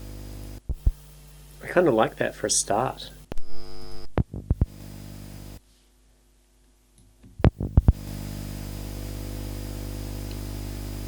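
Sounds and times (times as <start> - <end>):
hum-like drone with hiss: 0.0 - 6.2, 7.3 - 11.0.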